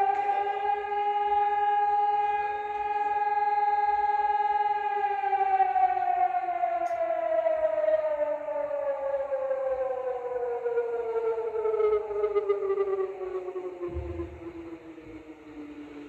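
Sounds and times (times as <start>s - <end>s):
siren alarm winding down: 10.0s - 15.2s.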